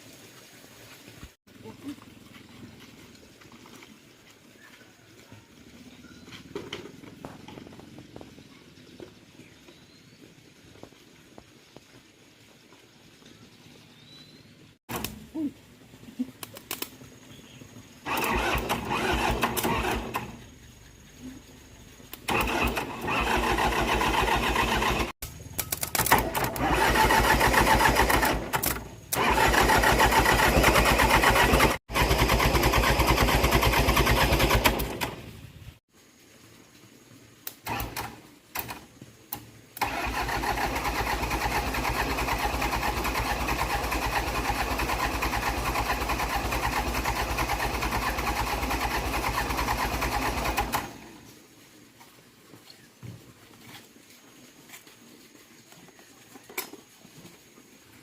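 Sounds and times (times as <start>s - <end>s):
tractor engine running: 18.0s - 21.2s, 22.1s - 35.8s, 39.8s - 51.2s.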